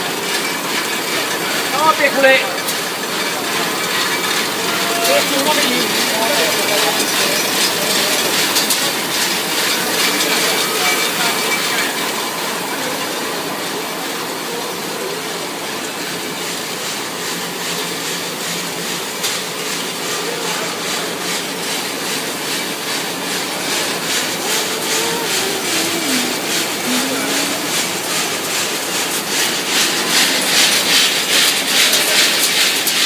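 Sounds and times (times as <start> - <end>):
fast even machine clatter: 0.0 - 33.0
steady mechanical din: 15.9 - 33.0.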